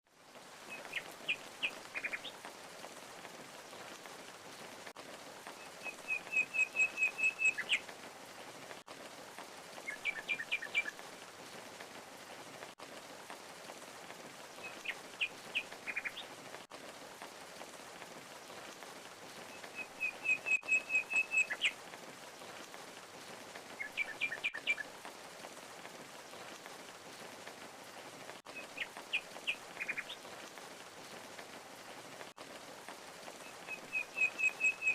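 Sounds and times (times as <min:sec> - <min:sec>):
songbird calling: 0:00.7 - 0:02.3, 0:05.8 - 0:07.8, 0:14.6 - 0:16.3, 0:19.5 - 0:21.7, 0:33.4 - 0:34.9.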